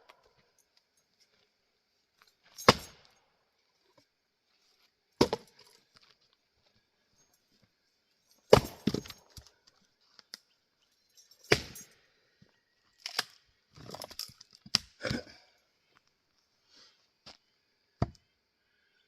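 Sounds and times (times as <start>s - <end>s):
axe splitting wood: 2.6s - 3.0s, 5.2s - 5.6s, 8.5s - 9.5s, 11.5s - 11.8s.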